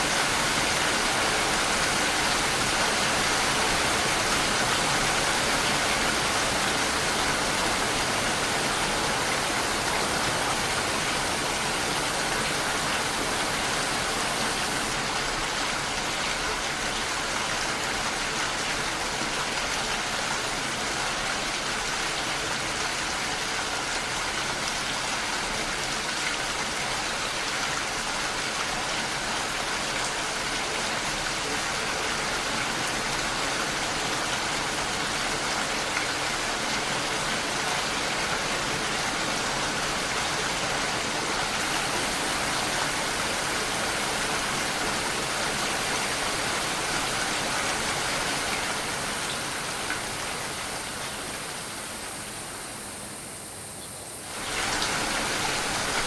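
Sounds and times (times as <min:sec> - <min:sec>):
heavy rain hissing: 0:00.0 - 0:15.7, 0:32.3 - 0:56.0.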